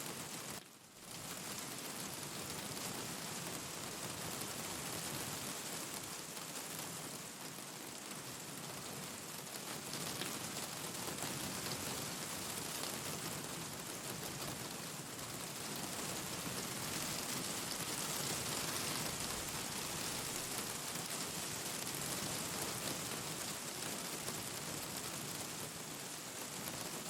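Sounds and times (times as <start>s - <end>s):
steady rain: 0.0s - 27.0s
wood fire crackling: 16.5s - 22.1s.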